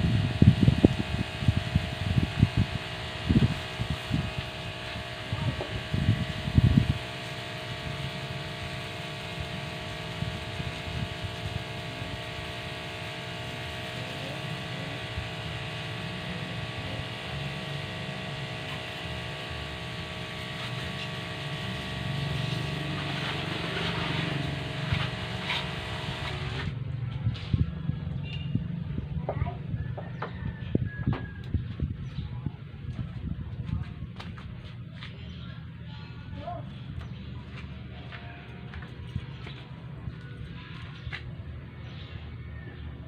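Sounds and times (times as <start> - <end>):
motor humming: 0.0 - 26.8.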